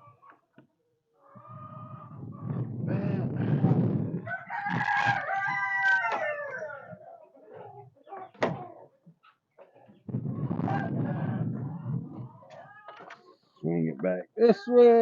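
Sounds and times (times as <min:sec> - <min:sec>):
rooster crowing: 0:04.2 - 0:07.0.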